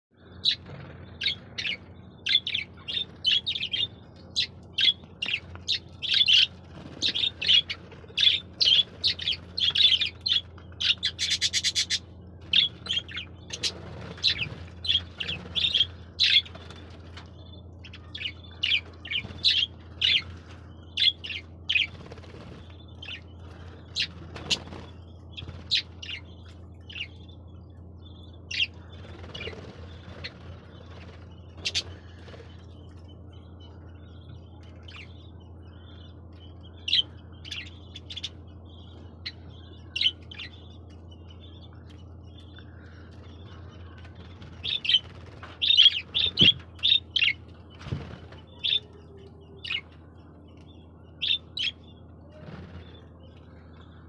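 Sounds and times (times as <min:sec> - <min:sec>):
low steady hum: 0:00.1 - 0:54.0
budgerigars chirping: 0:00.4 - 0:16.8, 0:31.6 - 0:32.5, 0:44.6 - 0:50.3, 0:51.0 - 0:53.0.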